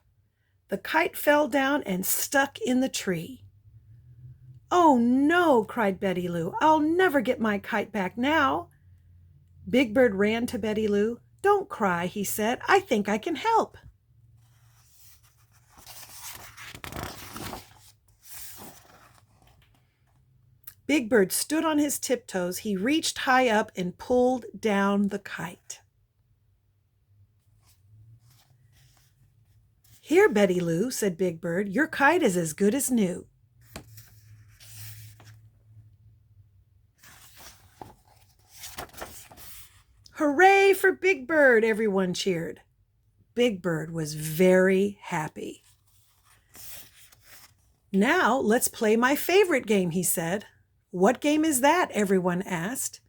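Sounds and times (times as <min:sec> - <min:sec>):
book pages rustling: 0:14.3 - 0:20.3, 0:27.4 - 0:30.1, 0:33.6 - 0:35.6, 0:36.9 - 0:40.0, 0:45.6 - 0:47.9.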